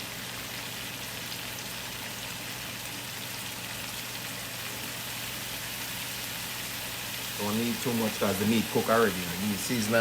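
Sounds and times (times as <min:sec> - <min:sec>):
food sizzling in a pan: 0:00.0 - 0:10.0.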